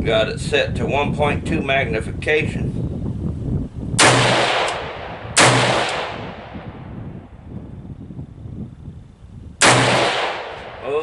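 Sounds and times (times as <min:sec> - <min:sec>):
rifle shots with rolling echo: 0:04.0 - 0:07.2, 0:09.6 - 0:11.0.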